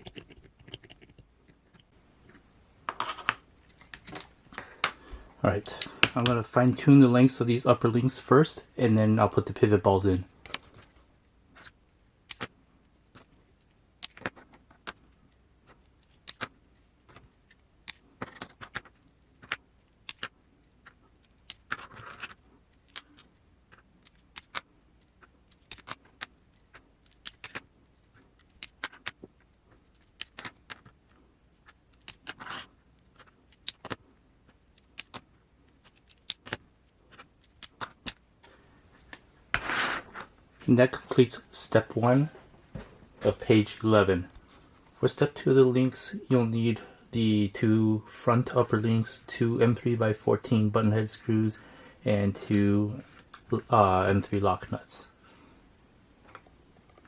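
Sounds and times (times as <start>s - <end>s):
small parts clicking and clinking: 10.4s - 39.2s.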